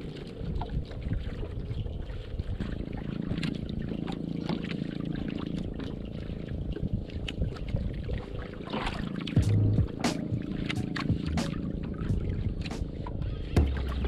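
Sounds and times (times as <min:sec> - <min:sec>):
knocks and splashes: 0:00.0 - 0:06.2, 0:07.2 - 0:14.0
water sloshing around boat: 0:00.0 - 0:14.0
steady low hum: 0:02.0 - 0:14.0
loud low buzz: 0:09.4 - 0:10.2.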